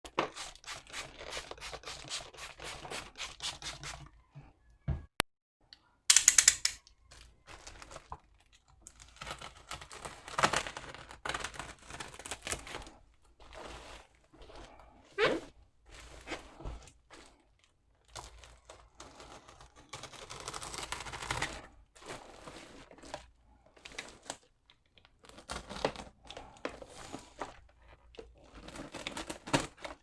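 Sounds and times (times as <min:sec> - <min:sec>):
plastic wrapping crinkling: 0:07.0 - 0:14.8, 0:17.0 - 0:30.0
packaging ripping: 0:08.9 - 0:12.9, 0:18.1 - 0:21.7.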